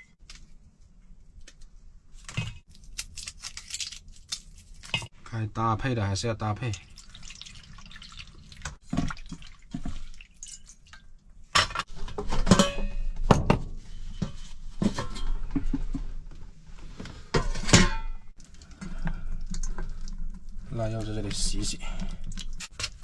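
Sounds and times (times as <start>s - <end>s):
water dripping and splashing: 6.6s - 11.2s
cookware and utensils clinking: 8.9s - 13.2s.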